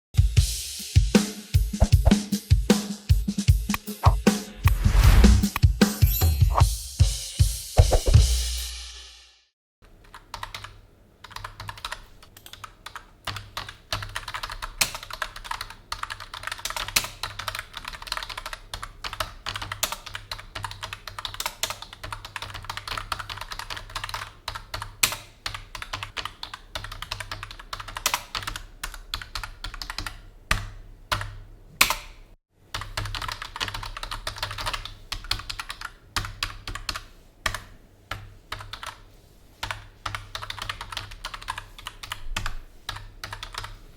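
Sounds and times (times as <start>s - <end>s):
typing on computer keyboard: 9.8s - 39.0s, 39.6s - 43.8s.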